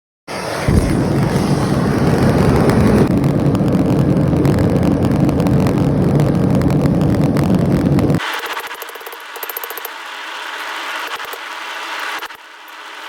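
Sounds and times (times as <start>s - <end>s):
forge rumbling: 0.3s - 8.2s
low hum: 0.3s - 13.0s.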